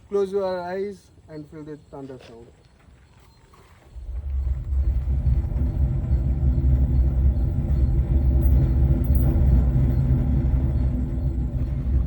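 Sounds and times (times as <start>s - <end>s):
spring thunder drum rumbling: 4.0s - 12.0s.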